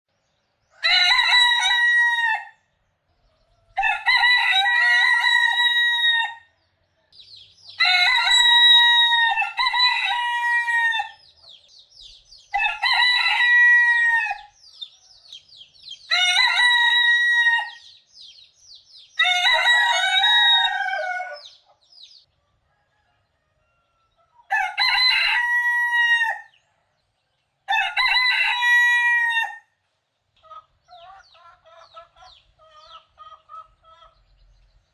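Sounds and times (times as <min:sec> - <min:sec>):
roosters crowing: 0:00.7 - 0:02.7, 0:03.4 - 0:06.5, 0:07.7 - 0:11.6, 0:12.5 - 0:18.0, 0:19.0 - 0:21.6, 0:22.3 - 0:26.7, 0:27.6 - 0:29.8.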